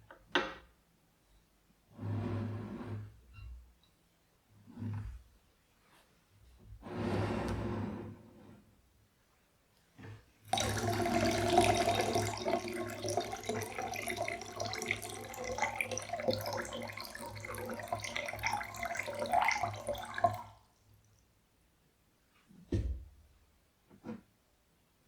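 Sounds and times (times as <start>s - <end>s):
water running and splashing: 10.5s - 20.6s.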